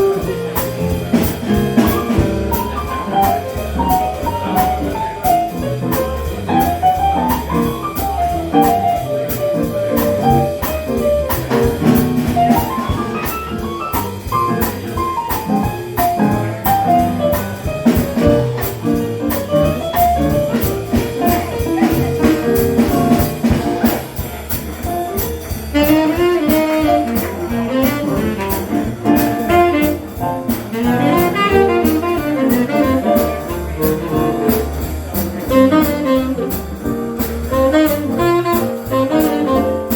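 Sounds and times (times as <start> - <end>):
bass: 0.0 - 39.9
drums: 0.0 - 39.9
piano: 0.0 - 39.9
tenor saxophone solo: 25.7 - 39.9.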